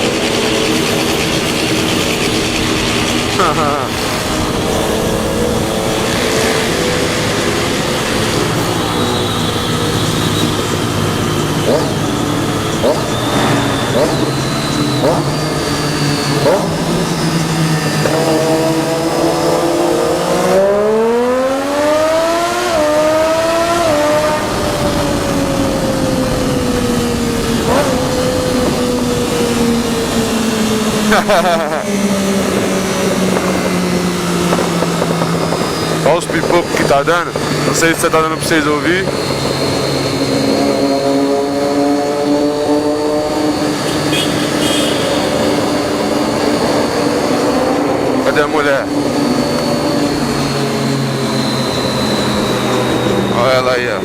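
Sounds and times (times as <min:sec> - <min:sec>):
wind rush: 0:00.0 - 0:20.0, 0:22.7 - 0:43.9
motorcycle engine accelerating: 0:00.0 - 0:54.0.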